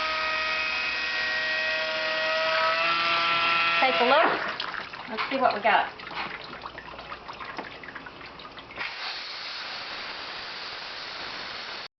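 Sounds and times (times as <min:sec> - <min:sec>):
stream of running water: 0:02.0 - 0:11.9
water dripping and splashing: 0:02.4 - 0:09.5.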